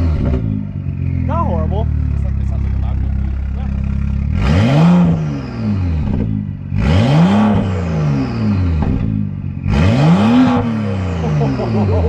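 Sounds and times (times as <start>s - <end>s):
loud car engine revving: 0.0s - 12.0s.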